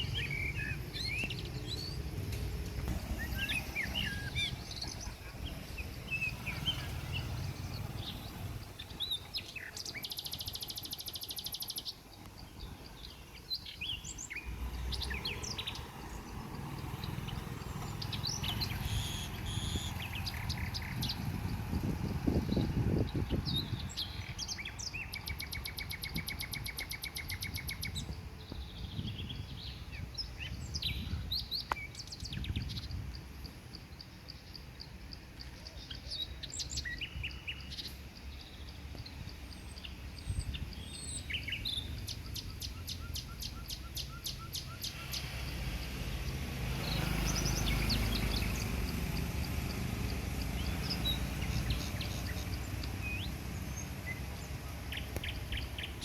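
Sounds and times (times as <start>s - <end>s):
birds chirping and whistling: 0.0s - 56.0s
bird trill: 17.0s - 21.3s.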